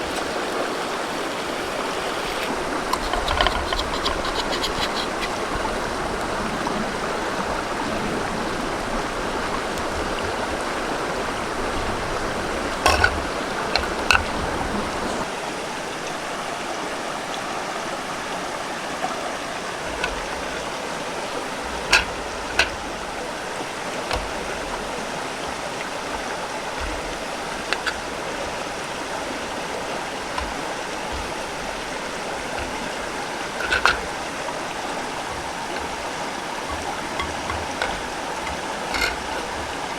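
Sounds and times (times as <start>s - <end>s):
stream running over rocks: 0.0s - 39.9s
sharp short knocks: 35.0s - 39.9s.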